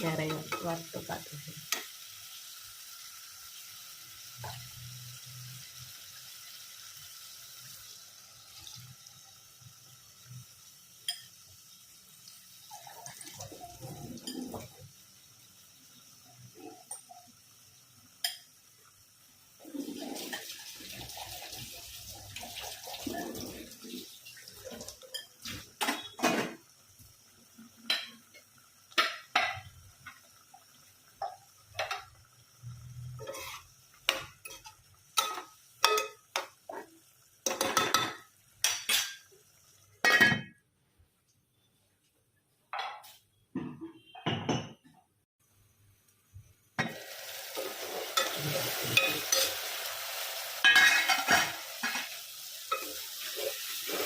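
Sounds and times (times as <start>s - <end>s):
metal utensils and pots clattering: 12.7s - 14.8s, 19.6s - 21.6s, 22.2s - 26.6s, 33.2s - 39.3s, 40.0s - 40.6s, 46.8s - 49.7s, 50.6s - 54.0s.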